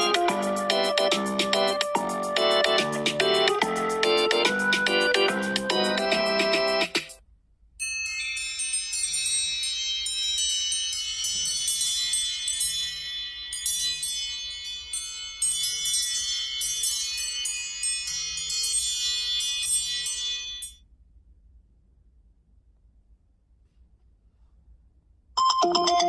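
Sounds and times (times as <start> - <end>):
bell-like ringtone chimes: 7.8 - 20.8, 25.4 - 26.0.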